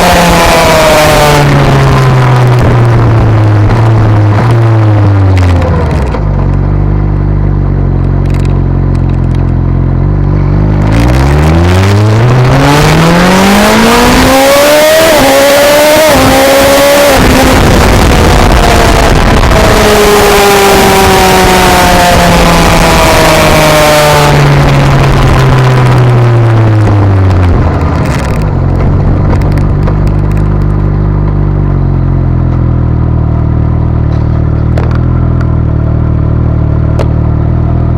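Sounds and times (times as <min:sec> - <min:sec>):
heavy wind noise: 0:00.0 - 0:06.9, 0:10.3 - 0:31.6
motorcycle engine revving: 0:00.0 - 0:37.9.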